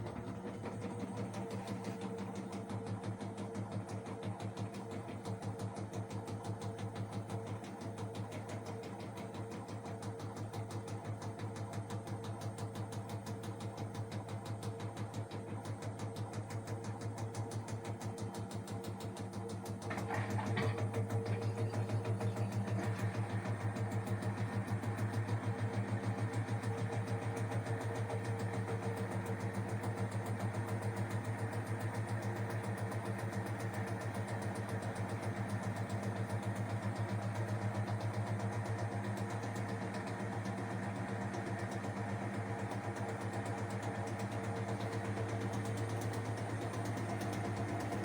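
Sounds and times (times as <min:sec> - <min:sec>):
washing machine running: 0:00.0 - 0:48.0.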